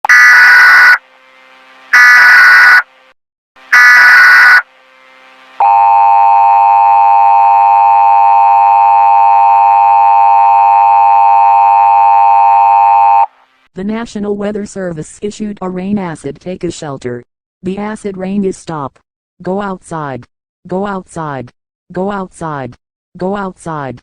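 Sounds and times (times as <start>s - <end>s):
data header bursts: 0.1s - 1.0s, 1.9s - 2.8s, 3.7s - 4.6s
two-tone attention signal: 2.0s - 2.8s, 3.8s - 4.6s, 5.6s - 13.3s.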